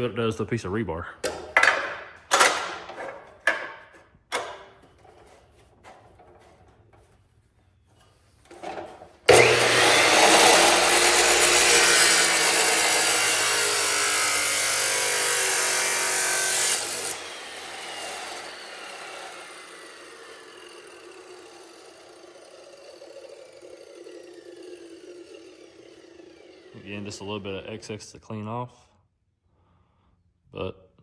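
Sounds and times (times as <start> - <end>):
chop saw grinding metal: 9.3 - 27.5.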